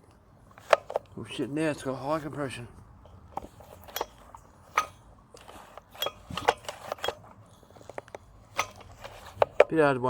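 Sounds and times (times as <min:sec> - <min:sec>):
chainsaw metallic clinks and knocks: 0:03.3 - 0:09.7.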